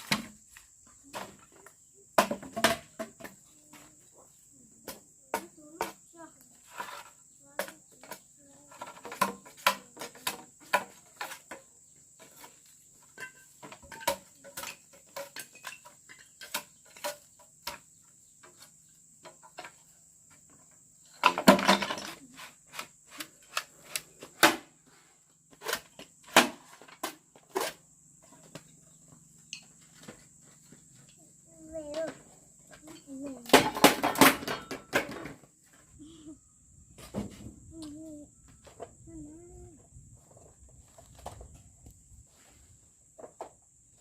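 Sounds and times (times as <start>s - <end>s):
high-pitched insect trill: 0.0s - 34.9s.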